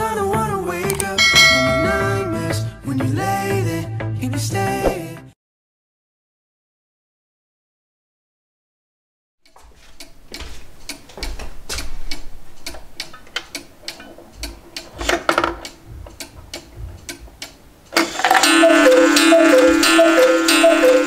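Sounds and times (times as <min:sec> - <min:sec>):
music box playing a tune: 0:01.2 - 0:02.7, 0:18.3 - 0:21.0
cuckoo clock clicking and ticking: 0:12.1 - 0:21.0.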